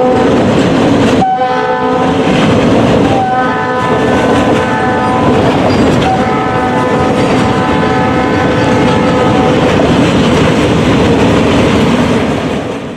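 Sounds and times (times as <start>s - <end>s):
locomotive horn blasts: 0.0s - 0.4s, 1.2s - 2.4s, 3.1s - 9.8s
passing train rumble: 0.0s - 12.9s.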